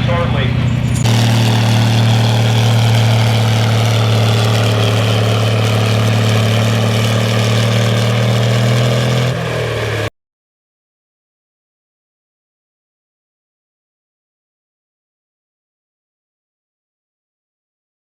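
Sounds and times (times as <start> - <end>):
tractor engine running: 0.1 - 10.1.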